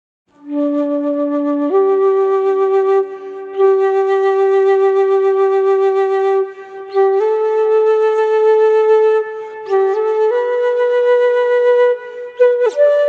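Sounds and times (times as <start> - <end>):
solo flute melody: 0.3 - 13.0.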